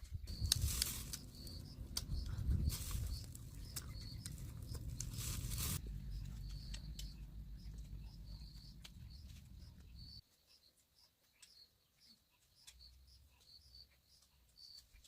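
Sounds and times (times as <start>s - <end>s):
rustling and pattering: 0.3s - 6.5s
low steady hum: 0.3s - 10.2s.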